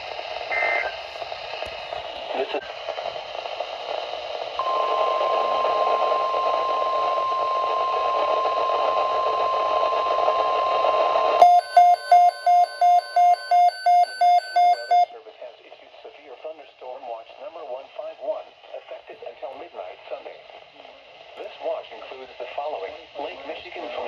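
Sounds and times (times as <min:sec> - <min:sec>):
radio static hiss: 0:00.0 - 0:11.4.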